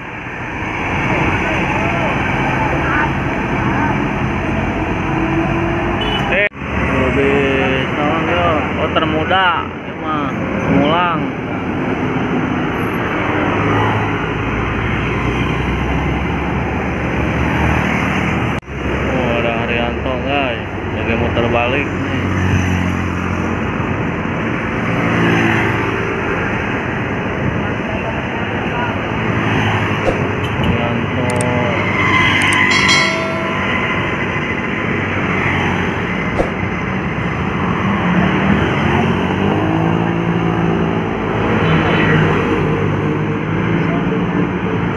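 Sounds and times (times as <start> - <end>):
busy road traffic: 0.0 - 44.9
passing vehicles: 0.0 - 44.9
heavy engine drone: 30.3 - 37.5.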